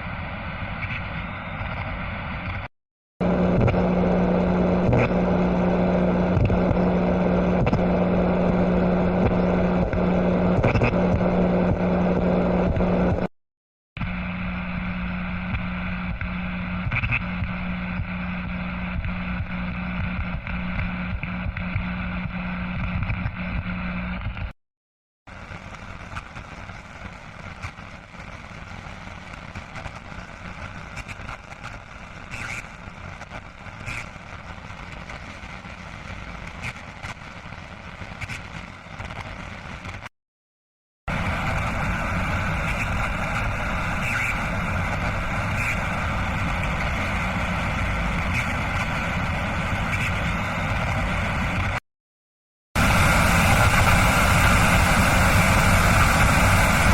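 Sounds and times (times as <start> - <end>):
television static hiss: 0.0 - 13.3, 14.0 - 24.4, 25.3 - 40.1, 41.1 - 51.8, 52.8 - 56.9
crackles: 0.7 - 13.3, 14.0 - 24.6, 25.3 - 40.1, 41.1 - 51.8
low buzz: 3.2 - 13.3, 14.0 - 24.2.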